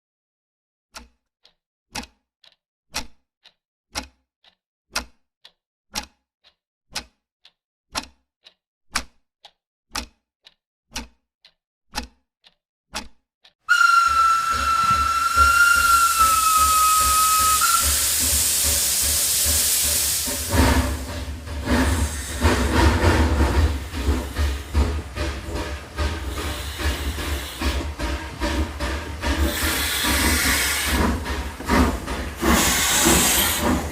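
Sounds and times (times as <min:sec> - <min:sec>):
sharp ticks: 0:01.0 - 0:13.2
steam locomotive whistle: 0:13.7 - 0:20.6
locomotive rumbling and chuffing: 0:13.7 - 0:33.9
steam hiss: 0:13.7 - 0:33.9.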